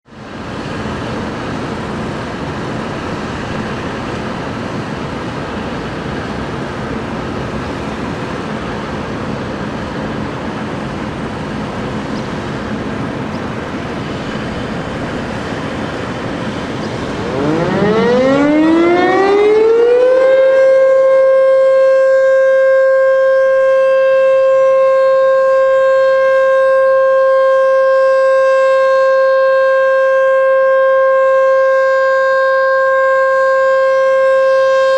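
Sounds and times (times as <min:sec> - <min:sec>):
warning siren winding up: 0:16.8 - 0:34.9.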